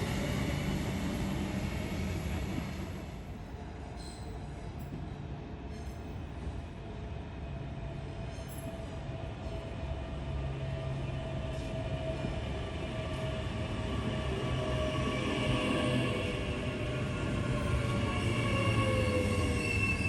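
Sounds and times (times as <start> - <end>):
train rumble: 0.0 - 20.0.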